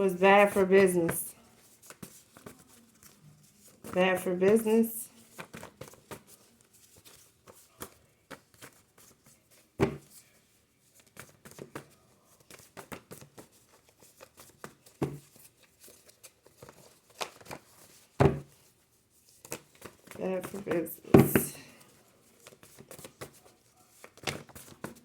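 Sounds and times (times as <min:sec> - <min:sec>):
cards shuffling clicks and rustles: 0:00.3 - 0:25.0
card taps: 0:19.8 - 0:21.6.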